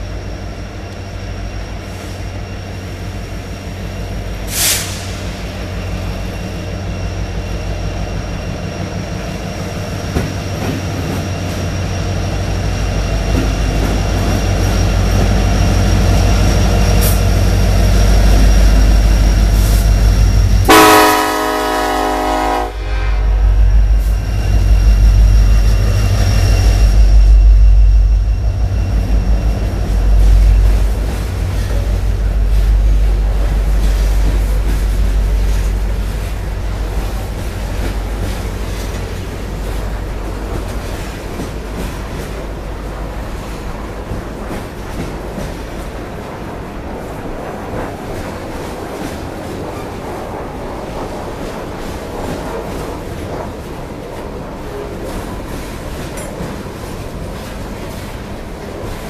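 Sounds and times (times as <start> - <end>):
diesel freight train rumbling: 0.0 - 59.0
locomotive air horn blast: 20.6 - 23.6.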